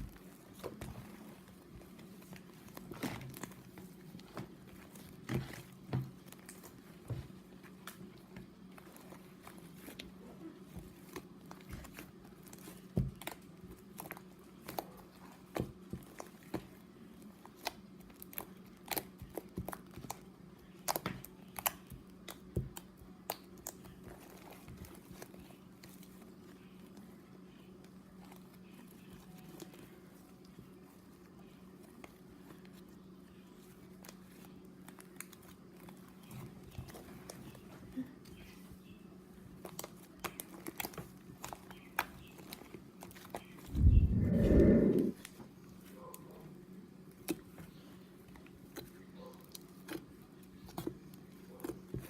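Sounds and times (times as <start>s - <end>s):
steady low hum: 43.4s - 48.6s.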